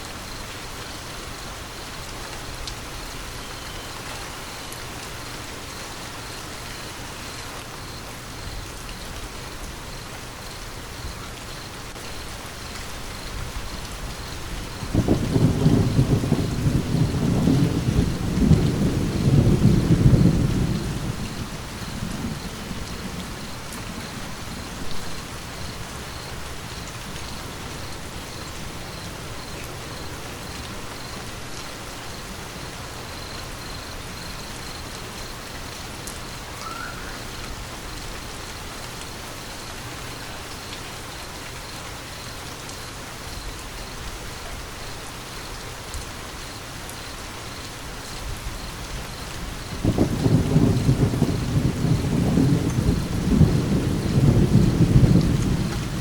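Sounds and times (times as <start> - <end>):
steady rain falling: 0.0 - 56.0
deep rumble of thunder: 13.3 - 31.2, 48.3 - 56.0.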